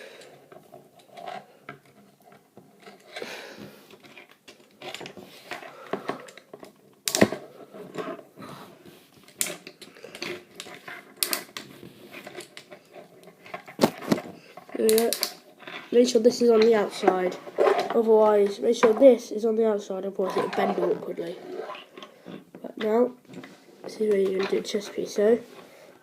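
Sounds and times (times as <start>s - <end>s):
plastic toy parts clicking: 9.3s - 11.6s, 13.5s - 15.8s.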